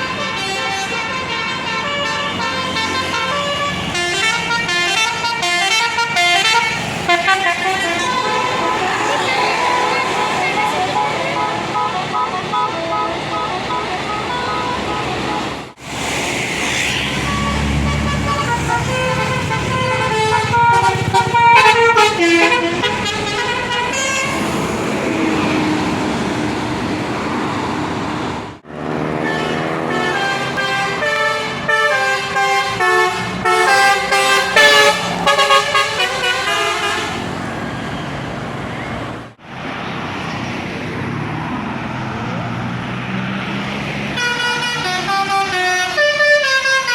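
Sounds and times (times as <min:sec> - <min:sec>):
bus horns playing fast tunes: 0:00.0 - 0:15.8, 0:17.1 - 0:26.0, 0:28.7 - 0:37.4, 0:44.0 - 0:46.9.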